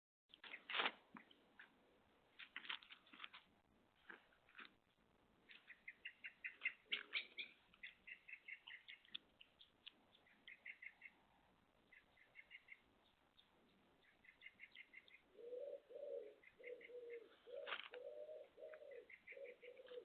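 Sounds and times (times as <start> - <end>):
faint clicks and crunches: 0.3 - 5.7, 8.6 - 10.6.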